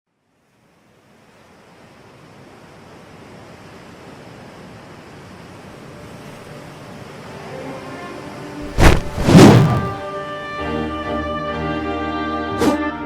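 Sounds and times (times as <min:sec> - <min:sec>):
rushing wind-like whoosh: 0:08.6 - 0:10.0.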